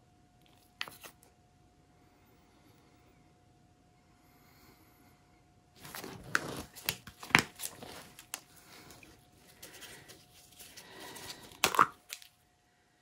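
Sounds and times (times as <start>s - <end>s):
plastic crinkling: 5.8s - 12.4s
plastic cups clicking and tapping: 9.6s - 12.3s.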